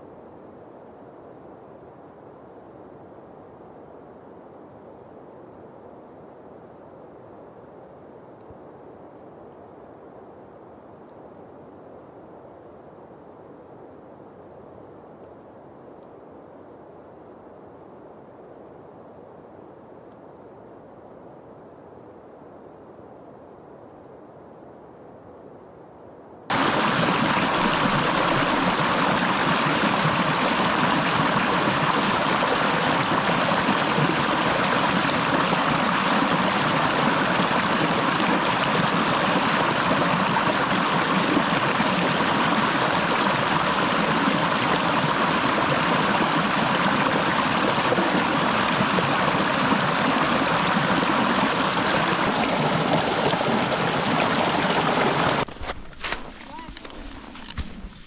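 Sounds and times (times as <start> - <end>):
stream rushing: 26.5 - 58.0.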